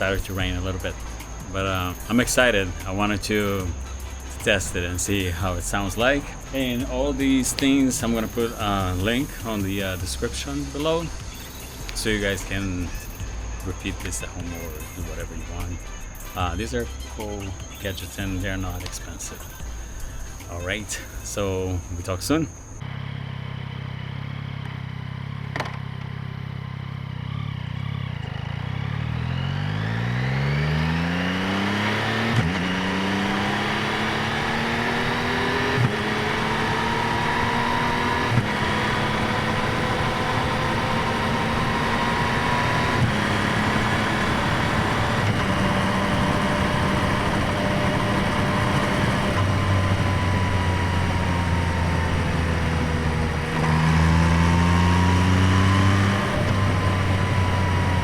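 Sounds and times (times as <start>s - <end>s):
motorcycle engine accelerating: 0.0s - 58.0s
gear change clicks: 6.3s - 10.0s, 25.4s - 26.2s, 34.9s - 54.6s.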